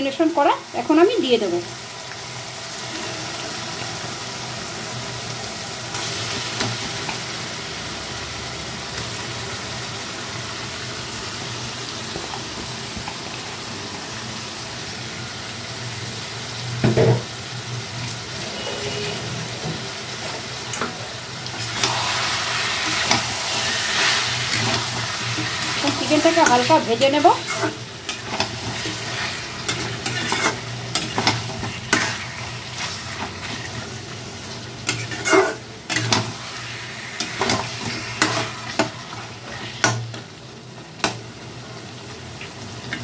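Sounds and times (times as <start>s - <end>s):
chicken sizzling in hot oil: 0.0s - 43.0s.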